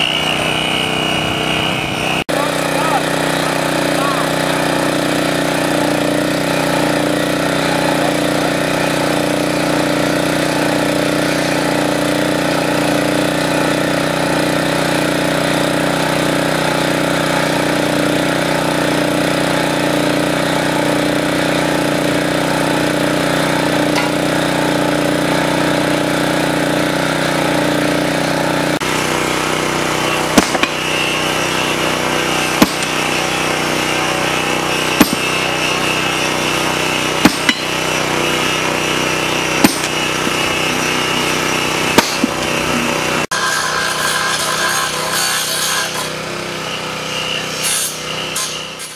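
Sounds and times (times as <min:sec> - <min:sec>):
small engine running: 0:00.0 - 0:48.9
sharp knocks: 0:30.4 - 0:30.8, 0:32.6 - 0:33.0, 0:35.0 - 0:35.3, 0:37.2 - 0:37.7, 0:42.0 - 0:42.4.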